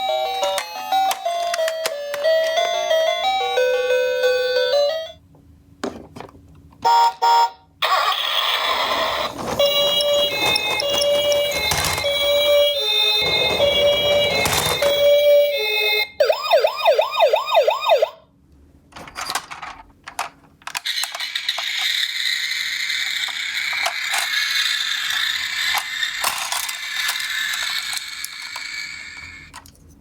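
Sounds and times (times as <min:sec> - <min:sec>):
toy siren: 0:06.9 - 0:18.2, 0:20.9 - 0:29.5
whirring rattle: 0:07.9 - 0:15.1, 0:19.3 - 0:29.7.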